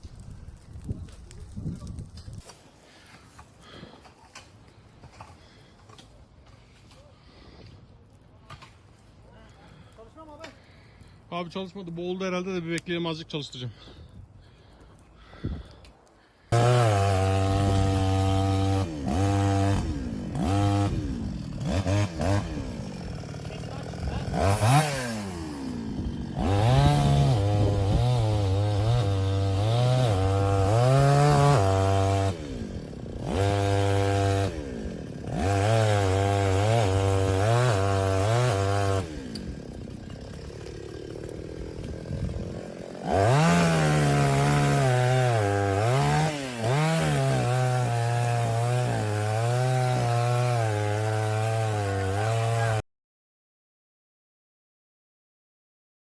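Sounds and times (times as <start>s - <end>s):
small engine revving and idling: 16.5s - 52.8s.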